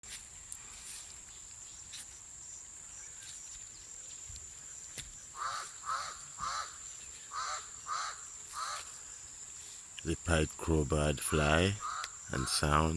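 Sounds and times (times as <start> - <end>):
crow cawing: 5.4 - 9.0, 11.3 - 12.8.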